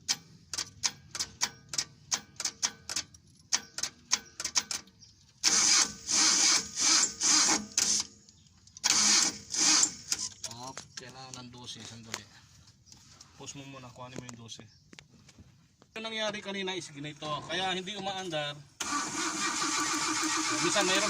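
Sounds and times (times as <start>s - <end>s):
sharp irregular clicks: 0.0s - 12.2s
engine cranking on starter: 4.2s - 8.2s, 8.8s - 10.6s, 18.8s - 21.0s.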